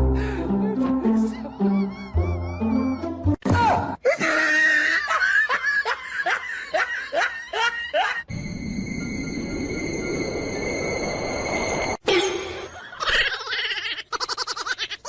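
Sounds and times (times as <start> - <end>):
music: 0.0 - 3.4
person laughing in bursts: 4.1 - 8.2
steady high tones: 8.3 - 12.0.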